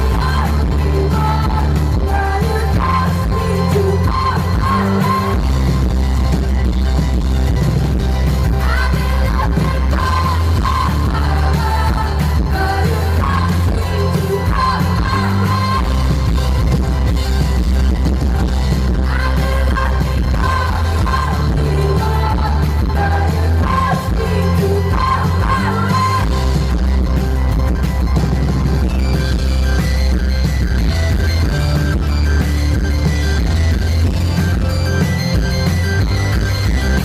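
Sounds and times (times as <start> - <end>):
woman singing: 0.0 - 5.6, 8.6 - 16.3, 19.0 - 26.6
band with heavy bass and drums: 0.0 - 37.0.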